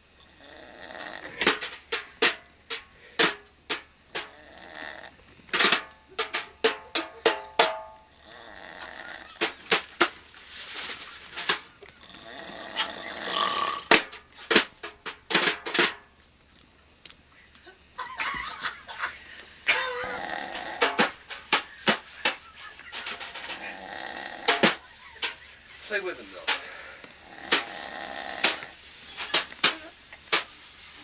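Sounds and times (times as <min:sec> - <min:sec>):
man snoring loudly: 0:00.3 - 0:01.5, 0:04.3 - 0:05.2, 0:08.1 - 0:09.3, 0:12.0 - 0:14.0, 0:19.8 - 0:20.8, 0:23.6 - 0:24.8, 0:27.2 - 0:28.8
snare drum played with brushes: 0:01.3 - 0:04.5, 0:05.5 - 0:08.2, 0:09.1 - 0:11.8, 0:12.8 - 0:16.2, 0:18.2 - 0:31.0.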